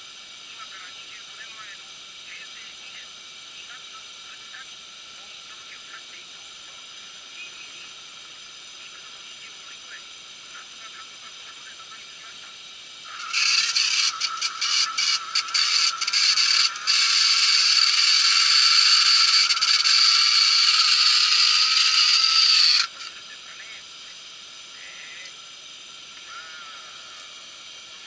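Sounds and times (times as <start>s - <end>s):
small mechanism whirring and rattling: 12.3s - 23.3s.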